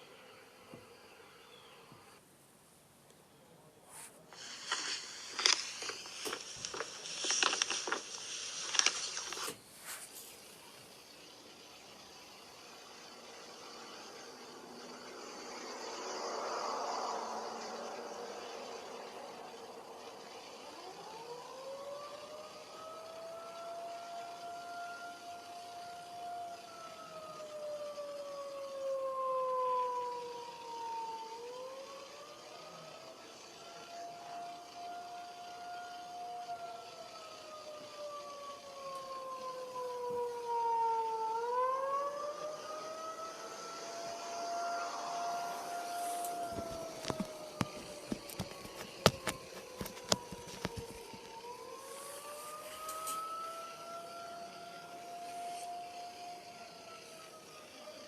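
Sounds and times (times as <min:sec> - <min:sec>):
warning siren wailing: 0:12.9 - 0:58.0.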